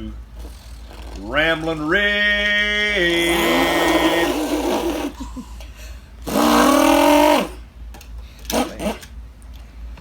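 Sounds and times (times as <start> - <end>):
person imitating revving engine: 2.7 - 5.4, 6.2 - 7.6.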